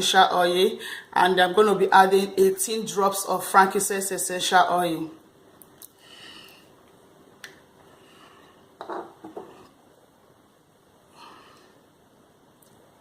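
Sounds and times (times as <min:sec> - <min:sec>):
soft knocks of glass bottles: 0:08.8 - 0:09.5.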